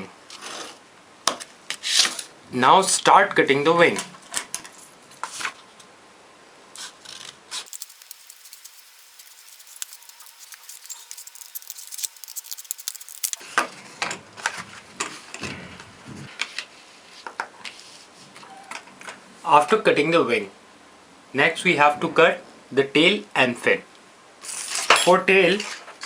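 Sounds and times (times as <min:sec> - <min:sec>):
paper rustling: 0:07.7 - 0:13.4
scissors snipping paper: 0:07.7 - 0:13.4.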